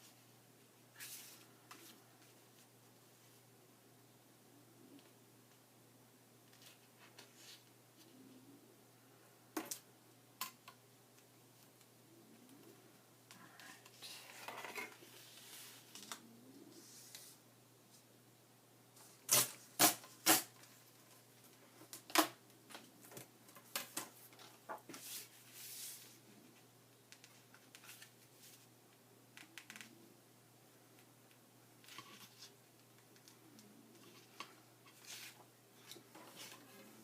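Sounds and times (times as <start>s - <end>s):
paper rustling and sliding: 24.9s - 26.2s, 34.9s - 37.0s.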